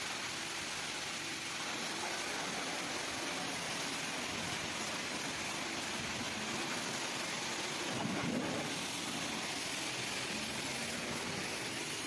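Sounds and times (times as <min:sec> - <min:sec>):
pressure washer spraying water: 0:08.0 - 0:12.0.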